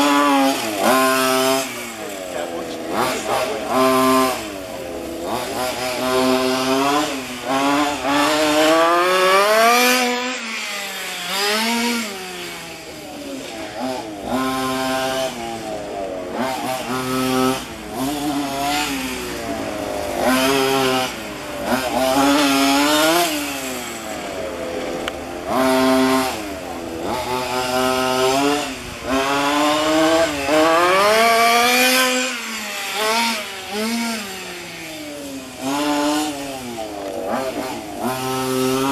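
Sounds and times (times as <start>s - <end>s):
two-stroke engine revving: 0.0s - 38.9s.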